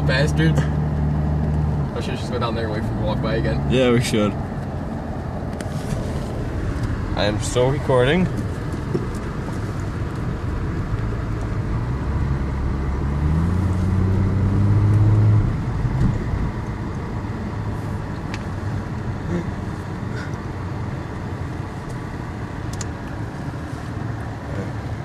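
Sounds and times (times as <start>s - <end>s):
road traffic noise: 0.0s - 25.0s
car engine accelerating past: 10.9s - 16.8s.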